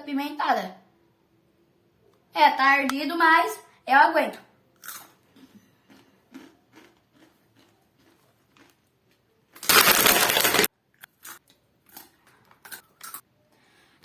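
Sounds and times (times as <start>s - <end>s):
crunching of chips being chewed: 4.8s - 13.2s.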